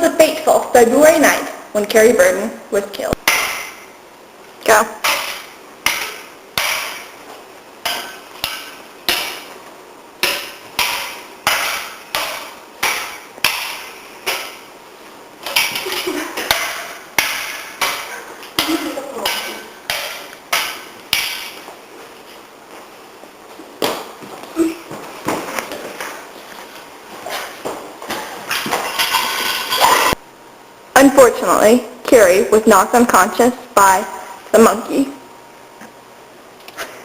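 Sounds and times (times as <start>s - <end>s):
metal utensils clanking: 28.5s - 30.2s.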